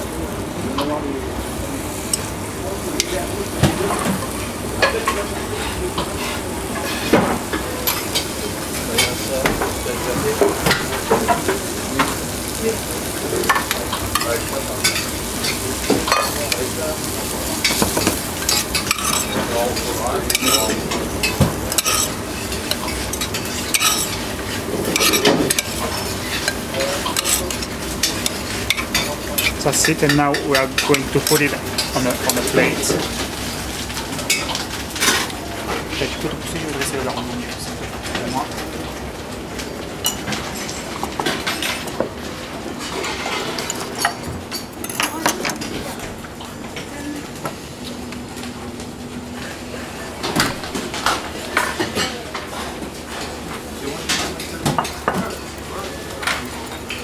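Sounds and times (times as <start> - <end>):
vegetables sizzling in butter: 1.3 - 37.2.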